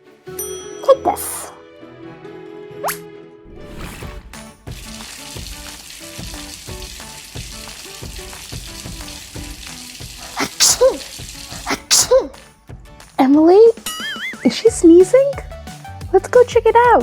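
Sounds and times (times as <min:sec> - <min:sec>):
soft background music: 0:00.0 - 0:17.0
person sneezing: 0:10.2 - 0:12.4.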